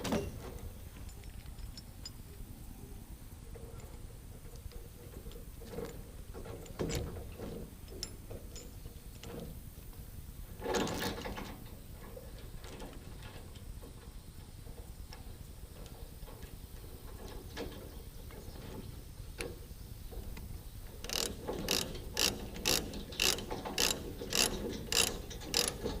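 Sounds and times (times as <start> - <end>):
faint steady hum: 0.0 - 26.0
mechanical clicks and rattles: 21.1 - 26.0.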